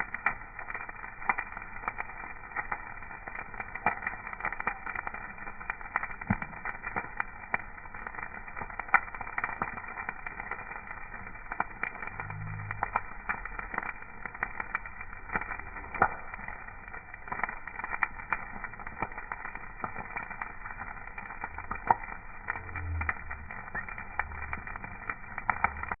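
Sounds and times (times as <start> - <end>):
fire crackling and popping: 0.0 - 26.0
low rumbles: 10.0 - 26.0.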